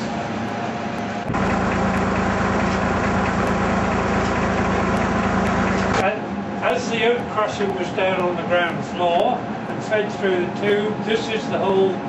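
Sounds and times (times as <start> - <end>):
tractor diesel engine running: 1.2 - 6.0.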